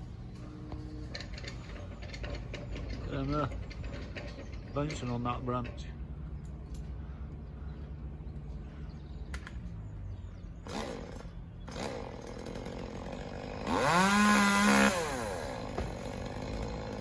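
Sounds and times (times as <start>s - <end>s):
chainsaw idling and revving: 10.6s - 17.0s.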